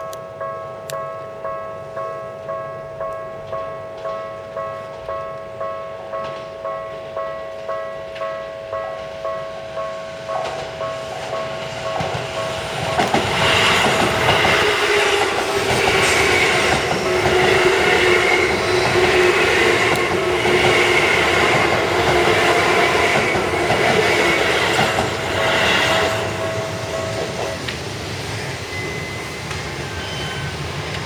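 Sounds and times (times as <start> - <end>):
level crossing warning bell: 0.0 - 31.0
train wheels clattering over joints: 10.4 - 28.6.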